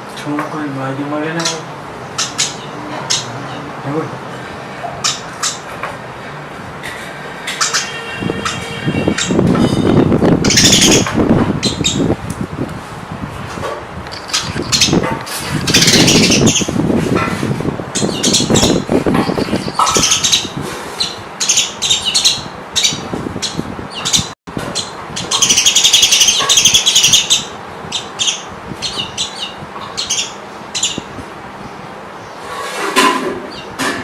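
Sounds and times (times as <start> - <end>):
canary singing: 1.0 - 12.2, 14.0 - 32.4.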